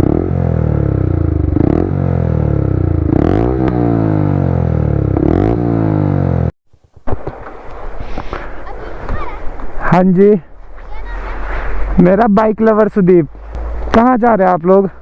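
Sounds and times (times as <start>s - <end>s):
motorcycle engine revving: 0.0s - 6.5s, 13.2s - 14.2s.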